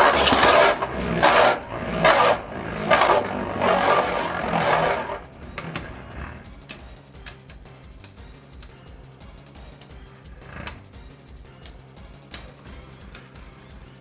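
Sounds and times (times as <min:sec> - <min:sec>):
spinning tops grinding in plastic arena: 0:00.0 - 0:06.8.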